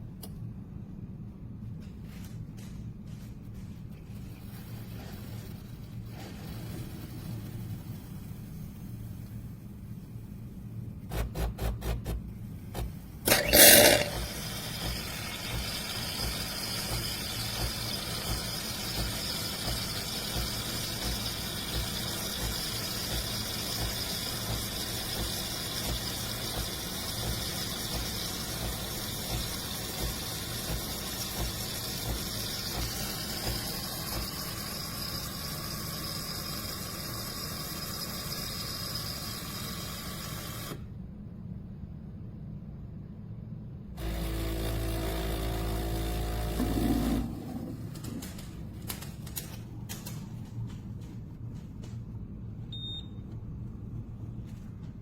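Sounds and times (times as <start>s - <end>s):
espresso machine pulsing clicks: 12.8s - 40.8s, 44.0s - 49.0s
espresso machine humming: 13.2s - 40.8s, 44.0s - 48.3s
espresso machine squealing hiss: 13.3s - 40.8s.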